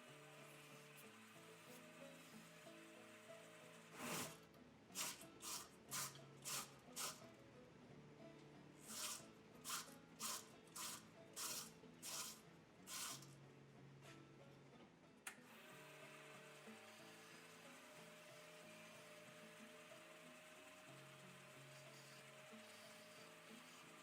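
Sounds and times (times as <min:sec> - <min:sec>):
quiet background music: 0:00.0 - 0:24.0
short scraping strokes: 0:03.9 - 0:04.4.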